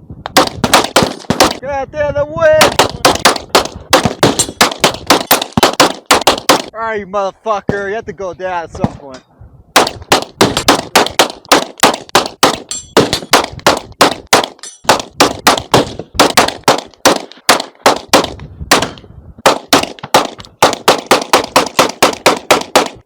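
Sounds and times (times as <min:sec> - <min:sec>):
rapid semi-automatic gunfire: 0:00.4 - 0:01.6, 0:02.6 - 0:06.7, 0:09.8 - 0:23.0.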